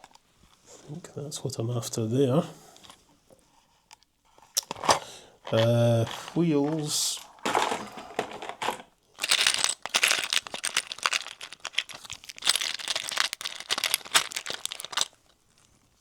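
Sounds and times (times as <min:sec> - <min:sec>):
small metal parts rattling: 0:06.6 - 0:15.4.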